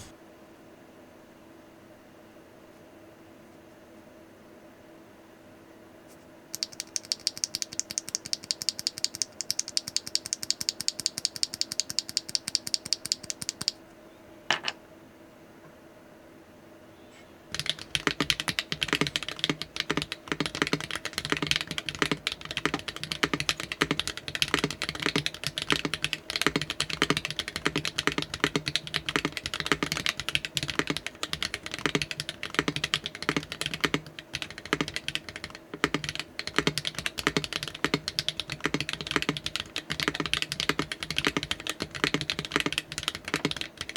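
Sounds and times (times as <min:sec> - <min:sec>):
mechanical keyboard typing: 0:06.5 - 0:13.8, 0:17.5 - 0:43.9.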